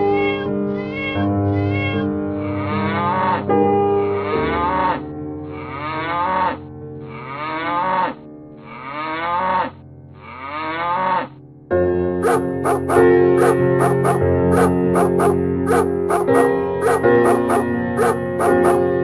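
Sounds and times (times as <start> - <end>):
cow mooing: 4.2 - 11.4, 12.2 - 19.0.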